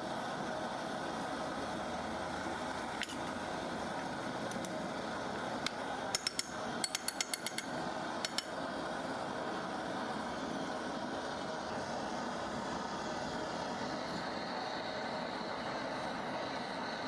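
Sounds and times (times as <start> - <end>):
hand tool tapping hard material: 6.2 - 8.5.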